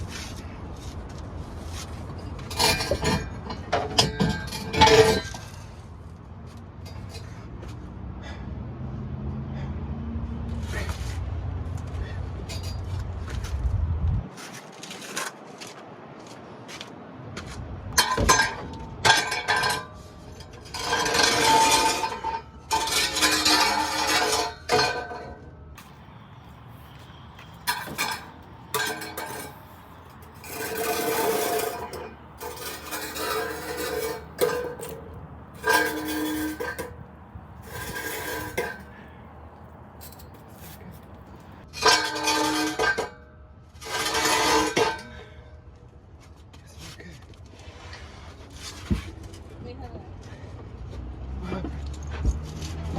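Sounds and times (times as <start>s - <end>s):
metal tools clinking: 26.8s - 37.0s, 37.6s - 39.0s, 40.0s - 43.1s.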